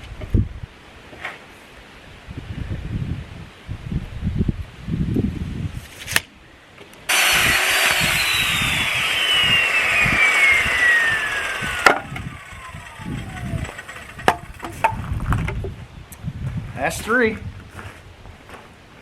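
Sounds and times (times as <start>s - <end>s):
wind buffeting microphone: 0.0s - 0.7s, 2.2s - 5.9s, 7.3s - 18.7s
power saw cutting wood: 7.1s - 15.0s.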